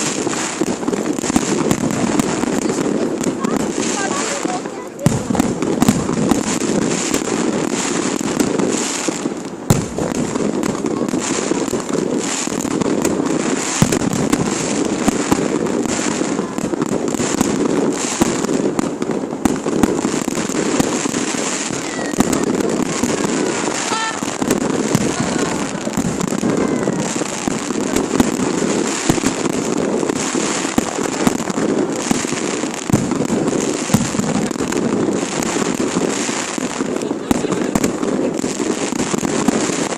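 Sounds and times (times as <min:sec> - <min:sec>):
fireworks bursts and crackling: 0:00.0 - 0:39.9
sharp fireworks bangs: 0:00.0 - 0:39.9.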